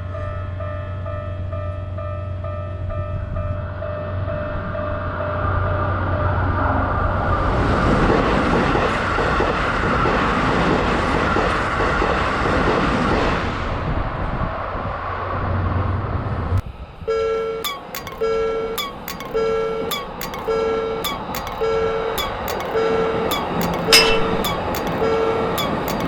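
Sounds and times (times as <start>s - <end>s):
train wheels running on rails: 4.1s - 13.8s, 17.1s - 26.0s.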